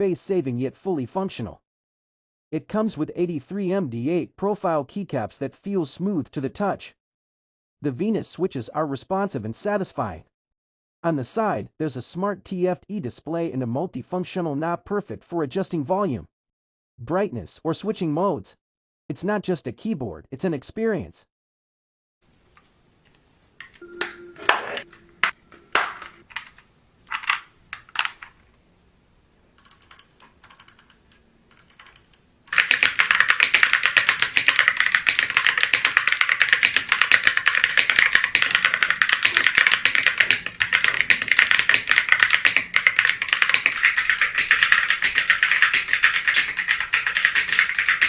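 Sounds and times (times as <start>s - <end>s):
mechanical keyboard typing: 29.6s - 48.0s.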